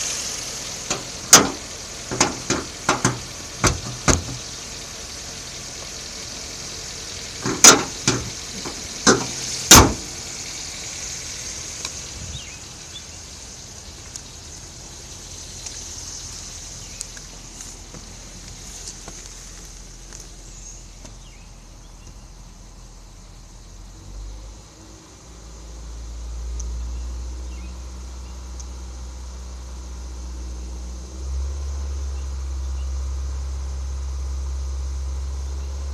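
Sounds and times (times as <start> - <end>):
faint engine ticks: 0.0 - 22.8, 26.3 - 29.0
car engine running: 0.0 - 35.9
sharp engine knocks: 0.8 - 4.5, 7.4 - 10.2.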